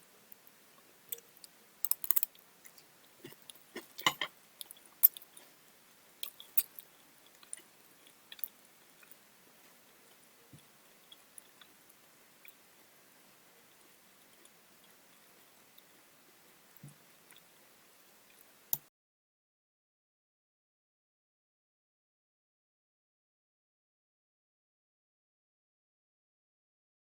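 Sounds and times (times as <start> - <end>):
person chewing food: 1.1 - 12.6.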